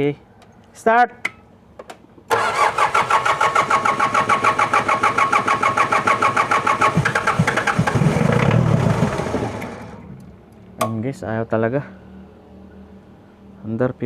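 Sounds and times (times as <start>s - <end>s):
diesel engine cranking: 2.3s - 10.3s.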